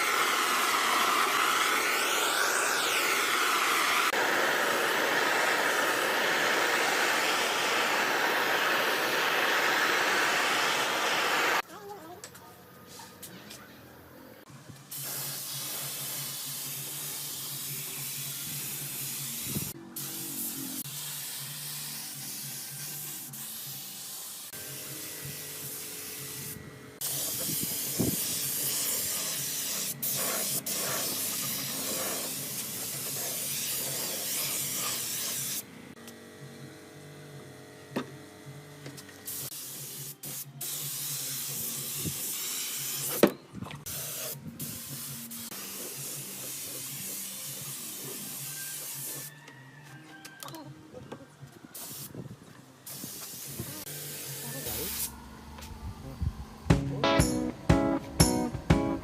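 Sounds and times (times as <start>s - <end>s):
spraying hiss: 0.0s - 11.6s, 14.9s - 35.7s, 39.2s - 43.2s, 43.8s - 49.3s, 51.8s - 55.2s.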